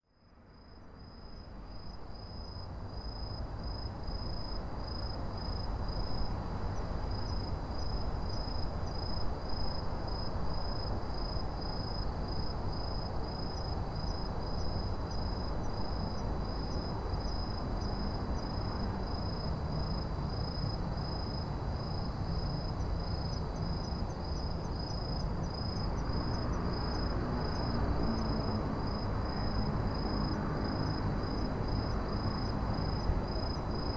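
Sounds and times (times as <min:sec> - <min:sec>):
low rumble of city traffic: 0:00.1 - 0:33.9
crickets chirping: 0:00.5 - 0:33.9.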